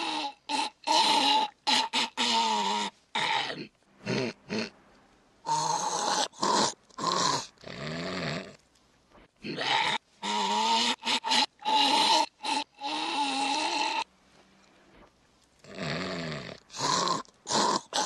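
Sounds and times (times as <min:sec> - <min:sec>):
man snoring: 0:15.7 - 0:18.0.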